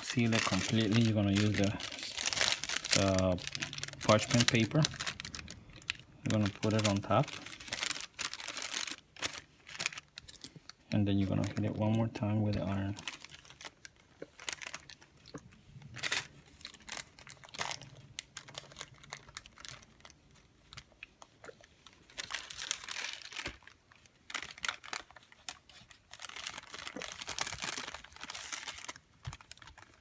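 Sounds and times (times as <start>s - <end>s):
paper crinkling under an iron: 0.0s - 15.1s, 15.8s - 20.9s, 21.8s - 30.0s.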